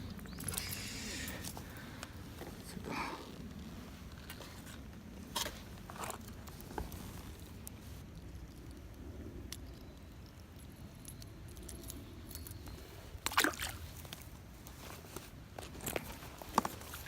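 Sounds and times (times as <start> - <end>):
faint handling noise: 0.0 - 8.7, 13.9 - 17.0.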